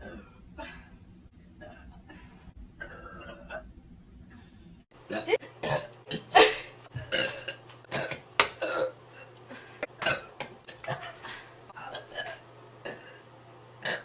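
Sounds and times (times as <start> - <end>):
girl burping: 5.1 - 9.0.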